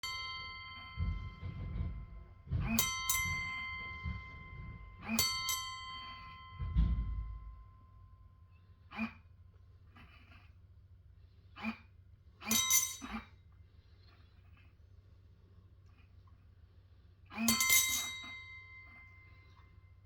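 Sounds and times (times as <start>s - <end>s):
small metal bell ringing: 0.0s - 8.4s, 12.4s - 13.3s, 17.4s - 19.8s
low rumbling noise: 0.8s - 5.2s.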